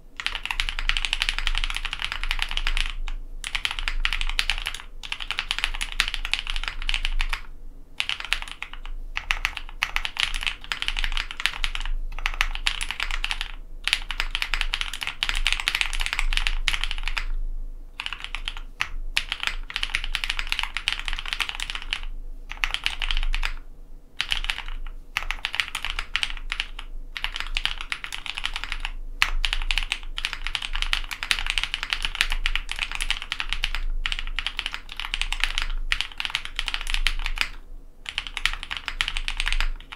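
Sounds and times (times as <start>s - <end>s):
typing on mechanical keyboard: 0.2s - 17.3s, 18.0s - 23.6s, 24.2s - 39.9s.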